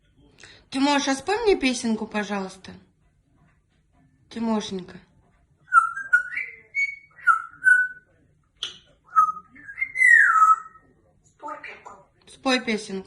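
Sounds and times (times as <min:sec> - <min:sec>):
parrot whistling a tune: 0:05.7 - 0:08.1, 0:09.1 - 0:10.8.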